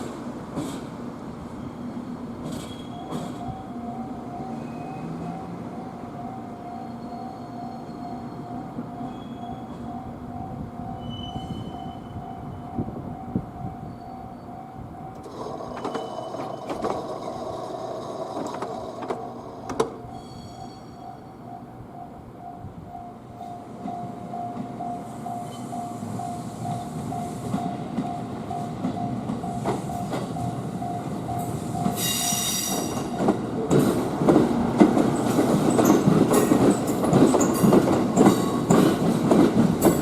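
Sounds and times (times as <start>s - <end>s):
train wheels clicking on rails: 0.0s - 5.7s, 15.0s - 20.6s, 23.6s - 40.0s
electric train passing: 0.0s - 40.0s
level crossing warning bell ringing: 2.8s - 33.4s.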